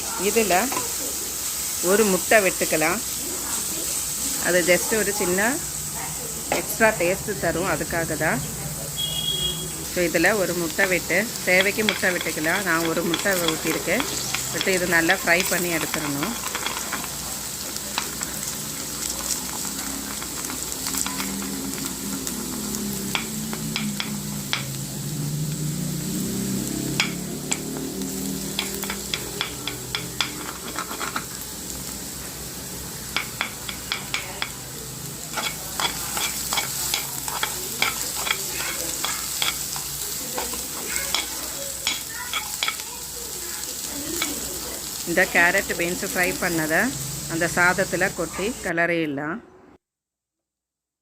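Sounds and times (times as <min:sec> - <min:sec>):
food sizzling in oil: 0:00.0 - 0:48.7
spatula clicking against pan: 0:28.5 - 0:30.4.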